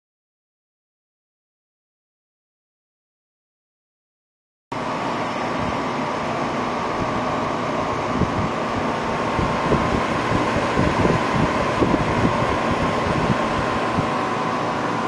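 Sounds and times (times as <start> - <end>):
air conditioner fan rushing: 4.7 - 15.0
faint steady whine: 4.8 - 15.0
low buffeting: 4.8 - 15.0.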